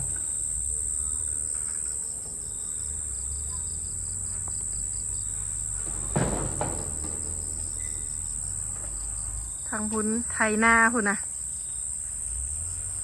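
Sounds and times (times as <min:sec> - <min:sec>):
crickets trilling: 0:00.0 - 0:13.0
short knocks: 0:05.6 - 0:10.1.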